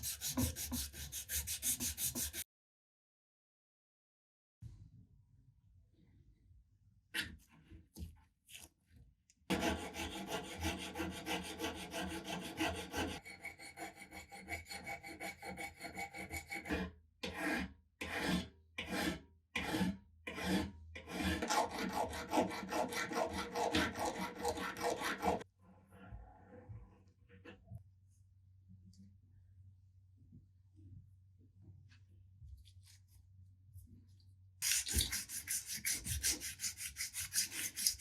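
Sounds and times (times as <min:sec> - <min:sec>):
metal rasping strokes: 0:00.0 - 0:02.4, 0:34.6 - 0:38.0.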